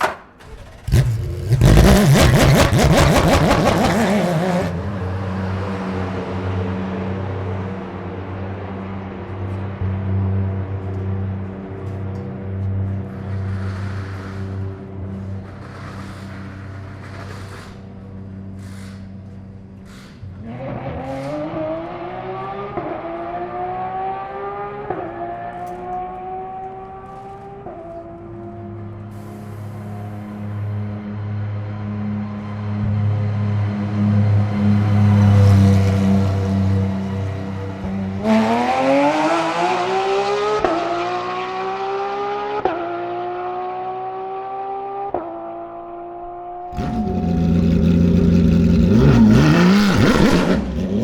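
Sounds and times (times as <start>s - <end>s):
race car engine accelerating: 0.4s - 51.0s.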